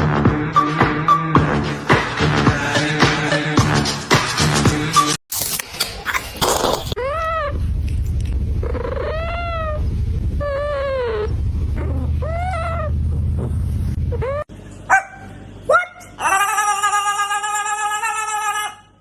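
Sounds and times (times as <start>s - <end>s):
steady low rumble: 6.9s - 15.6s.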